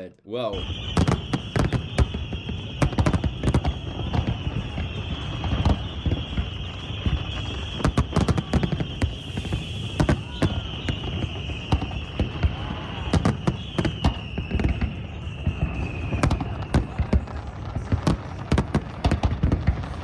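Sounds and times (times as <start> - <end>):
fireworks bangs: 0.0 - 20.0
fireworks hissing: 8.6 - 11.9.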